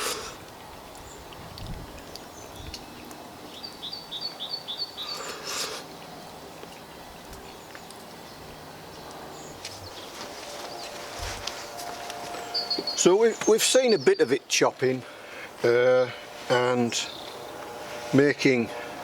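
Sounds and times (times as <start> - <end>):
outdoor background noise: 0.0 - 19.0
songbird singing high notes: 12.4 - 14.5.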